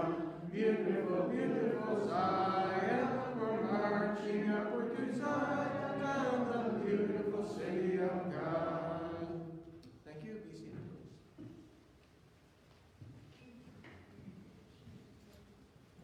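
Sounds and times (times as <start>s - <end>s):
congregation singing a hymn: 0.0s - 9.8s.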